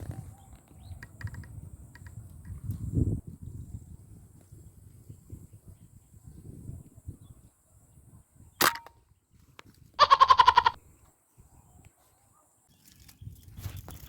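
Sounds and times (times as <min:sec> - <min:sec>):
airgun shot: 0:08.6 - 0:09.0.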